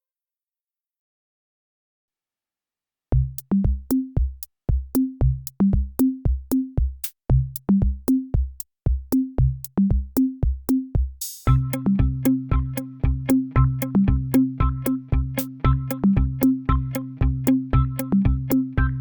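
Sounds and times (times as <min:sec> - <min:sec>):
drum machine beat: 0:03.1 - 0:19.0
synthesizer music: 0:11.5 - 0:19.0.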